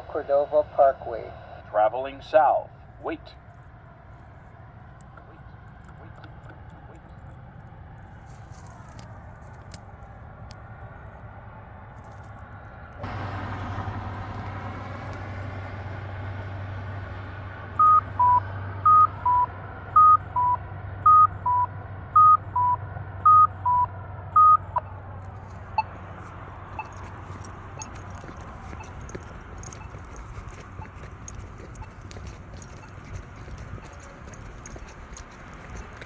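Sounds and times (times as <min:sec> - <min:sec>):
passing traffic hum: 0:00.0 - 0:36.0
faint locator ticks: 0:24.8 - 0:36.0.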